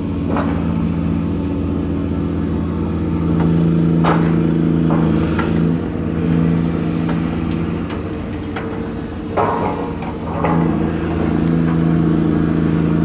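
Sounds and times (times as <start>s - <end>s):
ship diesel engine running: 0.0s - 13.0s
sharp metallic knocks: 7.0s - 11.8s.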